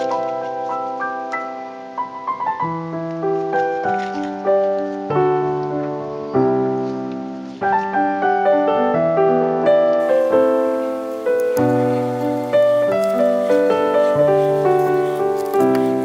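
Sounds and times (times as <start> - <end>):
calm piano music: 0.0 - 16.0.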